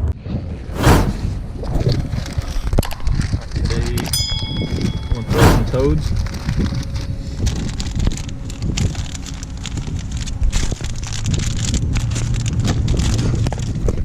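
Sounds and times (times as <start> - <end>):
low rumble: 0.7 - 1.7, 5.0 - 6.3.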